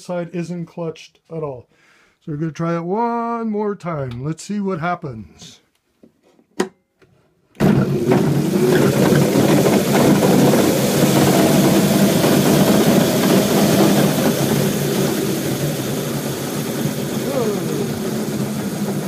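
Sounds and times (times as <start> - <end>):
motor driving gears whirring: 7.6 - 19.0.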